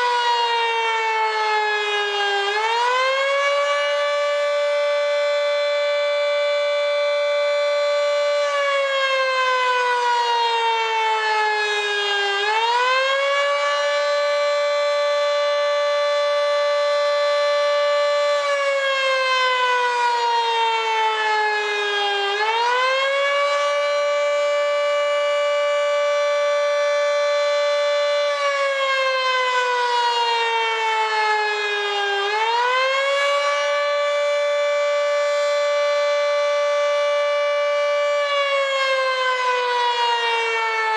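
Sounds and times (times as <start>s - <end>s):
dual-tone warning siren: 0.0s - 40.9s.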